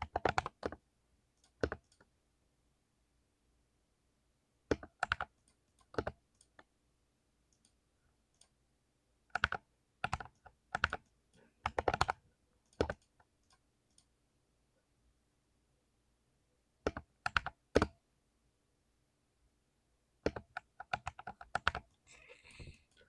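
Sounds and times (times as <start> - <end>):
mechanical keyboard typing: 0.0 - 0.8, 1.4 - 2.1, 4.7 - 6.2, 9.4 - 12.2, 12.8 - 13.1, 16.9 - 17.9, 20.2 - 21.9.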